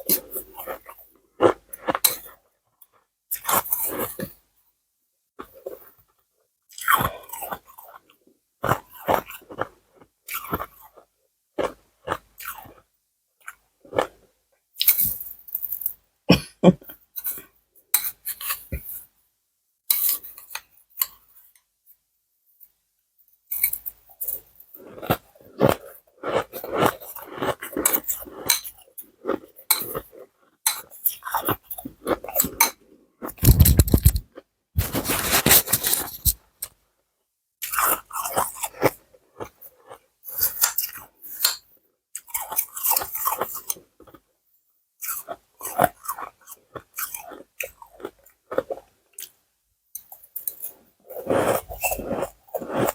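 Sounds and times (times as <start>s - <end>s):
ice being chewed: 0.0s - 4.4s, 6.7s - 14.2s, 23.5s - 36.7s, 37.6s - 41.6s, 42.2s - 44.3s, 45.0s - 49.4s, 50.0s - 52.9s.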